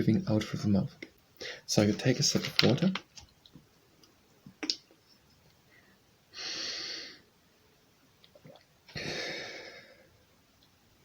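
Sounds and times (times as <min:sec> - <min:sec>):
person inhaling through nose: 0:06.4 - 0:07.2.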